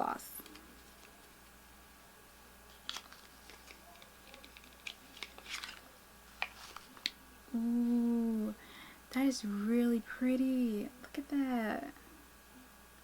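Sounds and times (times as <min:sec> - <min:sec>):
packaging rustle: 0:02.7 - 0:07.2.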